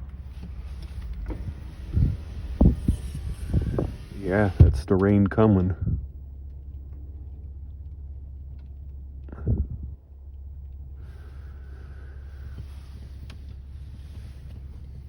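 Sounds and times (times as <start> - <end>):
steady hiss: 0.0 - 5.1, 10.9 - 15.0
idling engine rumble inside cabin: 0.0 - 15.0.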